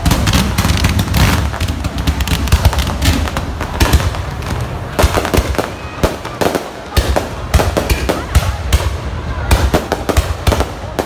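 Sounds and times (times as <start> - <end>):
fireworks bangs and crackling: 0.0 - 11.0.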